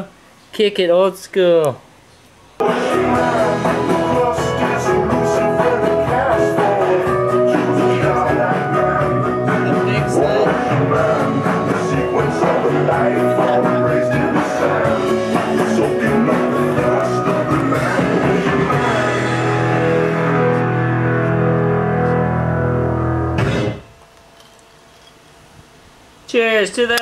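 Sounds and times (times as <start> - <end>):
rock music with guitar: 2.6 - 23.8.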